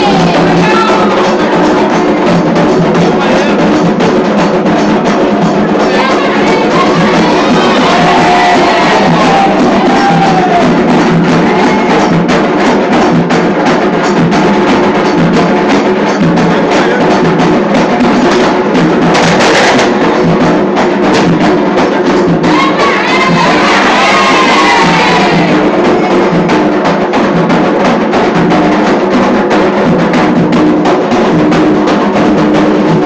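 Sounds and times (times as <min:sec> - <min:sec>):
people singing: 0:00.0 - 0:02.1, 0:05.0 - 0:12.7, 0:22.4 - 0:26.5
fast loud drumming: 0:00.0 - 0:33.0.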